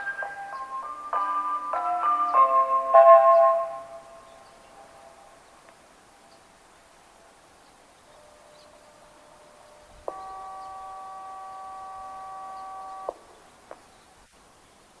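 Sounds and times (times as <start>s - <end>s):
loudspeaker electronic chord: 9.4s - 13.2s.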